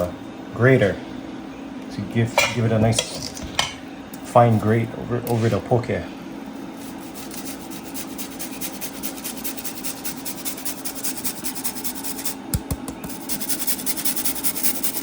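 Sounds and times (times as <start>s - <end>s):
seaweed rasping on grater: 6.8s - 12.4s, 13.1s - 15.0s.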